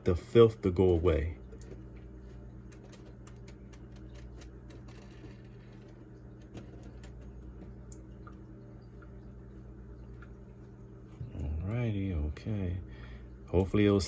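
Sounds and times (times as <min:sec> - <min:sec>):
low electrical hum: 0:00.0 - 0:14.0
faint clicks and handling noises: 0:00.8 - 0:08.4.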